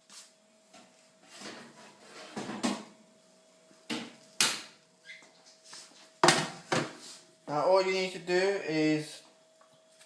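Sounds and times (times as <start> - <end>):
baking tray scraping: 1.2 - 2.6.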